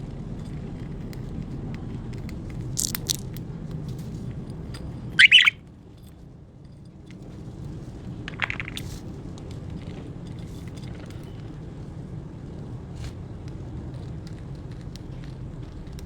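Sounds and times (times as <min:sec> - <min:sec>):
budgerigars cracking seed clicks: 0:02.8 - 0:03.4, 0:05.2 - 0:05.6, 0:08.3 - 0:08.9
budgie chirp: 0:05.2 - 0:05.6, 0:08.3 - 0:08.9.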